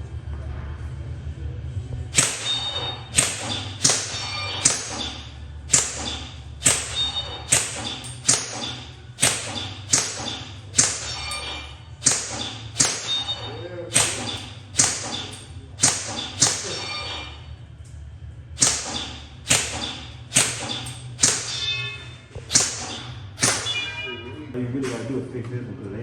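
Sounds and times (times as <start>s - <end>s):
airsoft gun shots: 2.1s - 11.2s, 12.0s - 13.3s, 13.9s - 16.9s, 18.6s - 21.7s, 22.4s - 23.8s.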